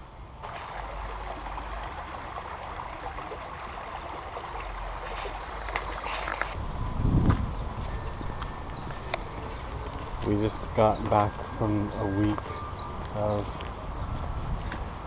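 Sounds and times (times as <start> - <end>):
creek water running: 0.4 - 6.6.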